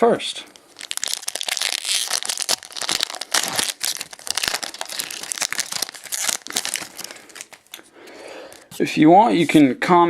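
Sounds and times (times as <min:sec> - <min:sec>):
foil wrapper crinkling and tearing: 0:00.6 - 0:07.9.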